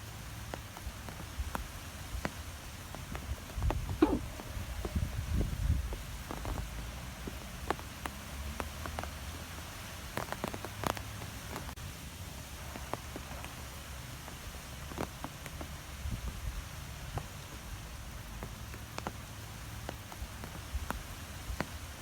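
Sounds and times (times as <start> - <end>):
sharp ticks and taps: 18.2 - 21.9.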